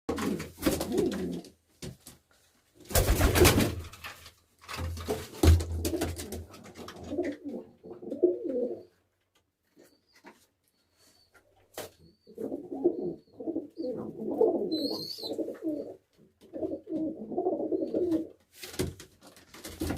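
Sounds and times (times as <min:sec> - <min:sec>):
pigeons cooing: 0:07.0 - 0:09.0, 0:12.0 - 0:18.3.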